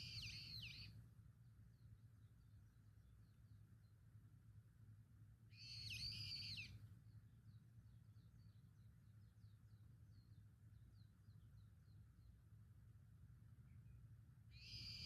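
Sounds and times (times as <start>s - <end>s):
small birds chirping: 0.0s - 1.0s, 5.5s - 12.6s, 13.5s - 15.0s
low steady background rumble: 0.0s - 15.0s.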